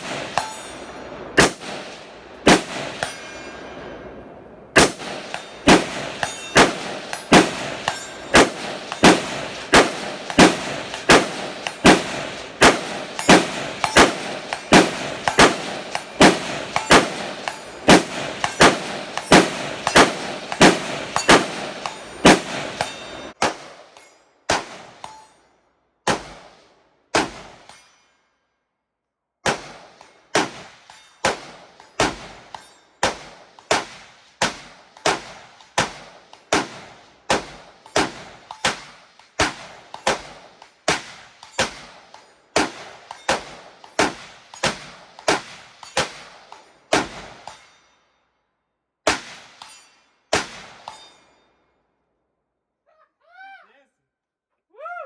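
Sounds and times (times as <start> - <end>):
semi-automatic rifle fire: 0.0 - 0.7, 1.4 - 3.2, 4.8 - 23.8.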